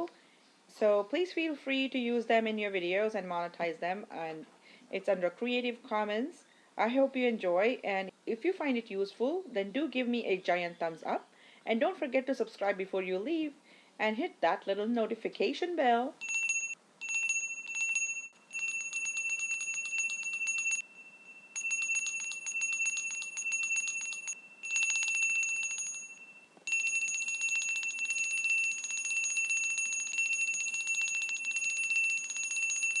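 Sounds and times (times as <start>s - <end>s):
small bell ringing rapidly: 16.2s - 33.0s.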